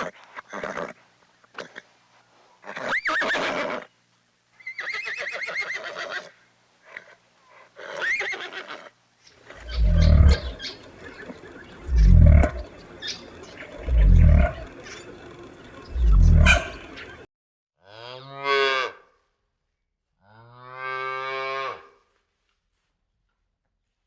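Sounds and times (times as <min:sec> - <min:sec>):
deep animal calls: 0:09.4 - 0:17.3
horse whinnying: 0:09.6 - 0:17.1.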